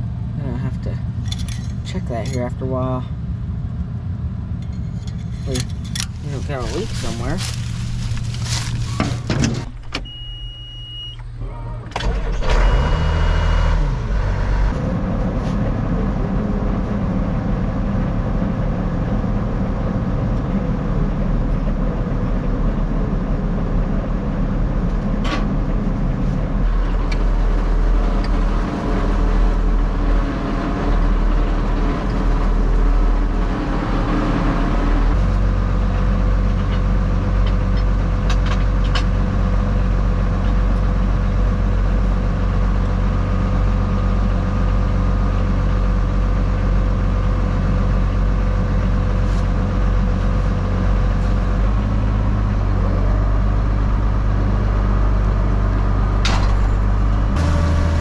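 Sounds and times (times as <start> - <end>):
truck engine running: 0.0 - 10.6, 11.2 - 58.0
high electronic beep: 10.1 - 11.2.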